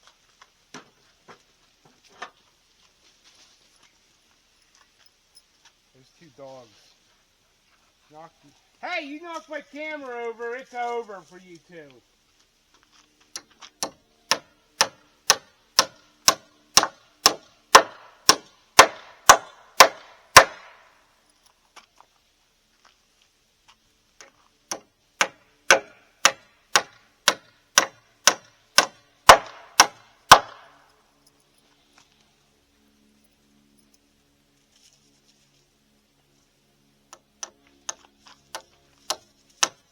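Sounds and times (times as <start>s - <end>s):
hammer blows: 13.8s - 20.8s, 24.7s - 30.7s.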